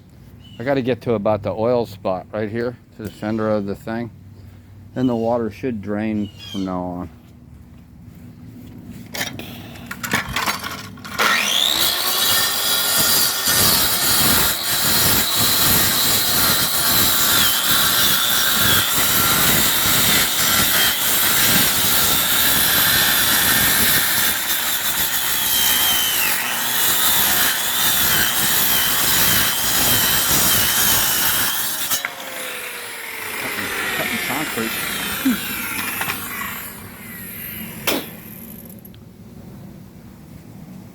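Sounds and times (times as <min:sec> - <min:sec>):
power saw cutting concrete: 0:10.4 - 0:38.8.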